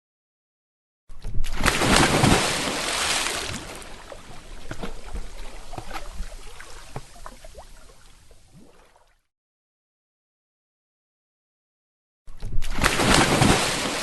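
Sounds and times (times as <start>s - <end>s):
water splash: 1.2s - 9.2s, 12.5s - 14.0s
water drips and bubbling plops: 1.6s - 9.3s.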